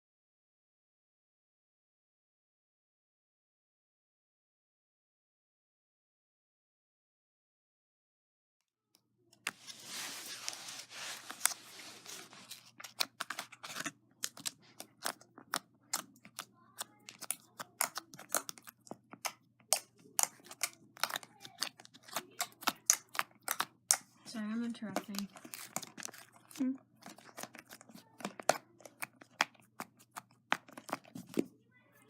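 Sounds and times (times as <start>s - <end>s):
slime squishing: 9.4s - 32.0s.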